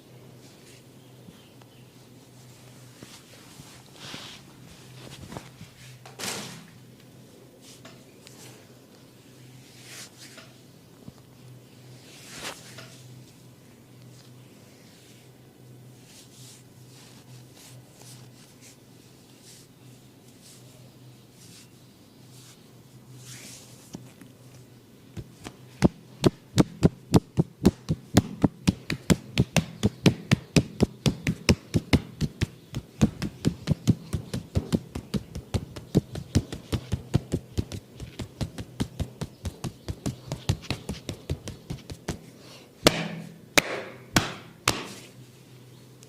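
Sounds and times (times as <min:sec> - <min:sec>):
hands slapping in massage: 0:25.2 - 0:42.3, 0:42.9 - 0:45.1.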